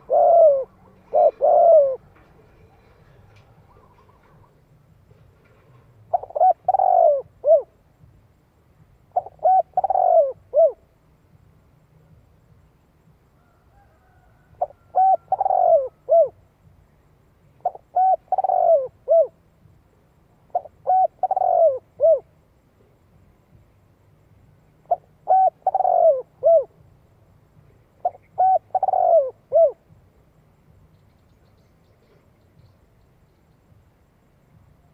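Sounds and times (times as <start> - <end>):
dove cooing: 0.0 - 4.7, 5.4 - 7.8, 9.1 - 10.9, 13.8 - 16.4, 17.6 - 19.4, 20.5 - 22.3, 24.8 - 26.8, 28.0 - 29.9.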